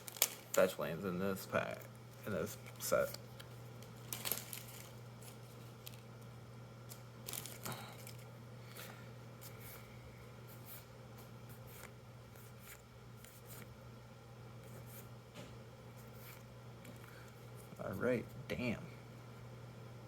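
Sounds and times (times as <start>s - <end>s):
cards and wrapper rustling: 0.0s - 0.8s, 2.3s - 6.1s, 6.9s - 8.3s
steady low hum: 0.0s - 20.0s.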